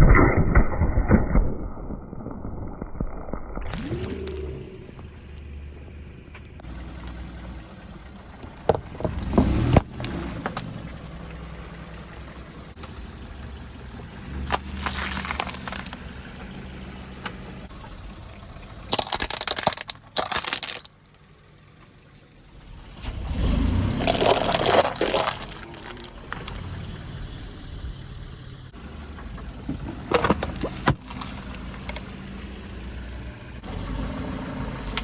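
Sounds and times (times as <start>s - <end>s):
low rumble of car: 3.6s - 35.0s
tyre crushing objects: 14.2s - 17.5s, 28.8s - 32.4s.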